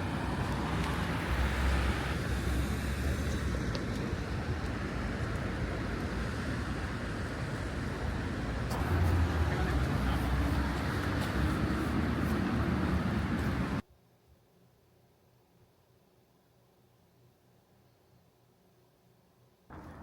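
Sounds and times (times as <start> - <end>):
moving vehicle rumbling: 0.0 - 13.8, 19.7 - 20.0.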